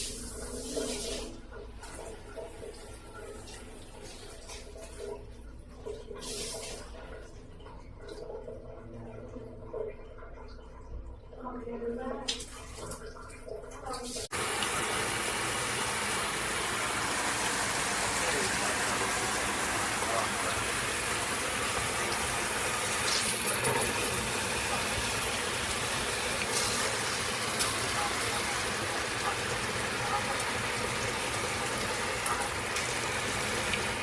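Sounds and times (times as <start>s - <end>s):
water spraying from shower head: 6.2s - 6.8s, 14.2s - 34.0s.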